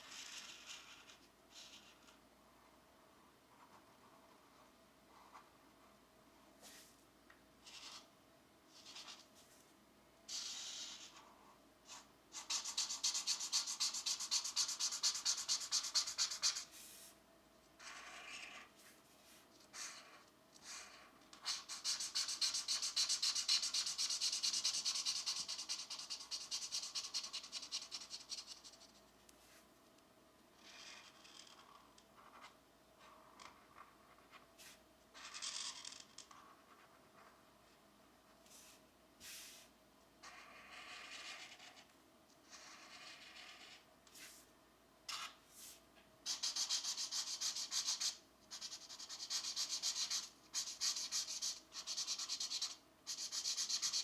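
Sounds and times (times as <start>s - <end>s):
pencil scratching on paper: 0.0s - 2.2s, 7.6s - 8.1s, 8.7s - 9.3s, 10.3s - 17.1s, 17.8s - 29.0s, 40.2s - 41.9s, 42.5s - 43.8s, 46.3s - 54.0s.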